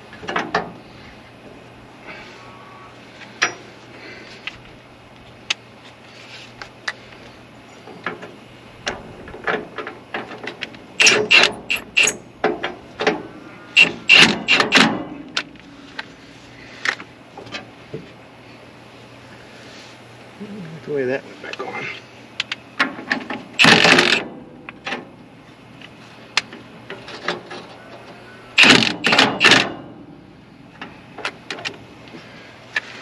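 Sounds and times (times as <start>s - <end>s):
metal parts clanking: 11.0s - 13.2s, 13.8s - 15.4s, 23.6s - 25.0s, 28.6s - 29.9s.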